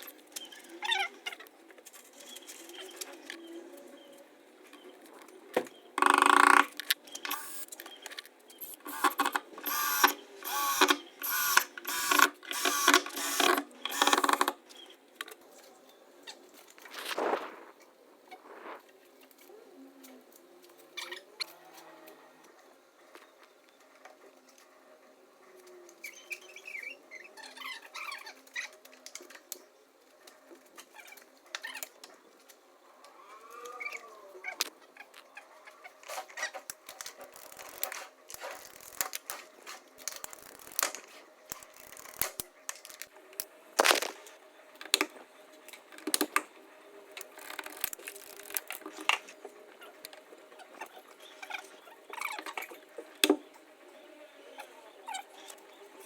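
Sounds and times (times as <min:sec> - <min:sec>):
hand tools and metal fittings clicking: 0:06.0 - 0:14.6.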